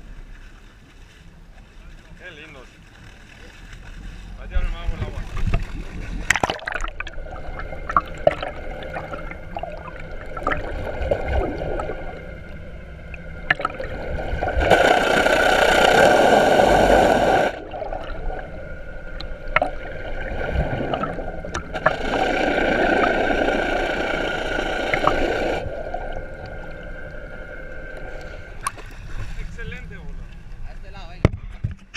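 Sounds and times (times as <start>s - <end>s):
boat engine hum: 0.0s - 31.1s
water gurgling and rushing: 5.0s - 30.5s.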